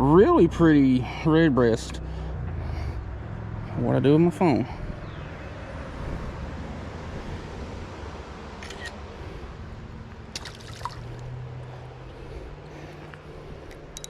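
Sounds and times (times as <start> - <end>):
low outdoor rumble: 0.0 - 14.0
sharp clicking and handling noises: 12.8 - 14.0.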